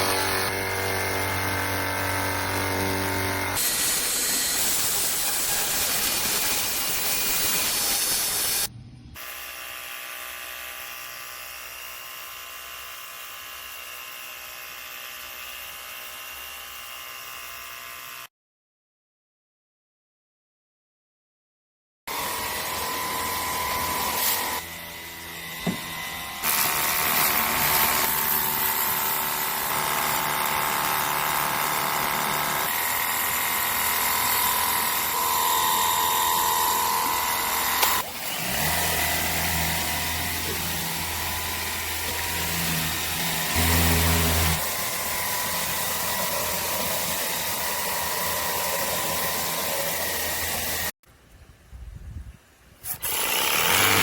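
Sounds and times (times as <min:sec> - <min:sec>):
electric pump whine: 0:22.1 - 0:50.9.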